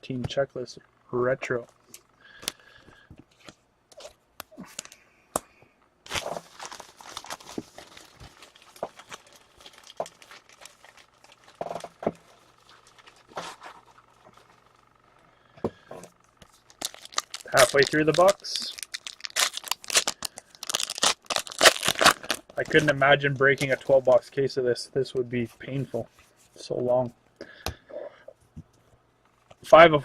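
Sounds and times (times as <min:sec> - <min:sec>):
faint low hum: 0:00.0 - 0:30.0
cards and wrappers rustling: 0:06.1 - 0:14.8, 0:16.4 - 0:24.3.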